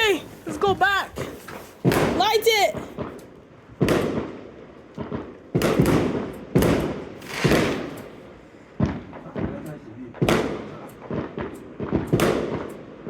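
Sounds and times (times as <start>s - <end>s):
fireworks bangs with echoing rumble: 0.0s - 13.0s.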